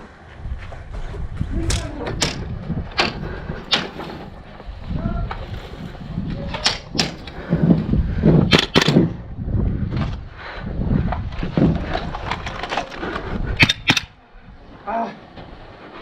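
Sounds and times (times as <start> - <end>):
wind rumble: 0.0 - 14.8
rustling and bumps: 0.3 - 16.0
airsoft gun shots: 8.5 - 9.2, 13.6 - 14.1.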